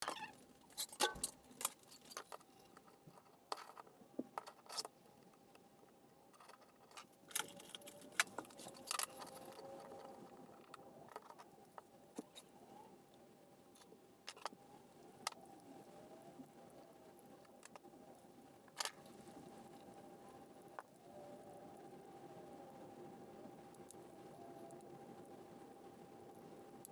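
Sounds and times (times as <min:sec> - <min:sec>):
faint steady hum: 0:00.0 - 0:26.9
small hard objects clattering: 0:06.4 - 0:11.5.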